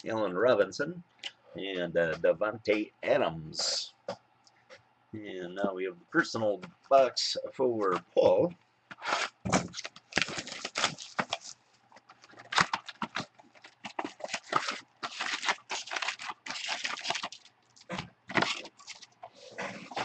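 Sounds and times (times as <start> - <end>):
plastic wrapping tearing and crinkling: 9.0 - 11.6, 12.2 - 19.2.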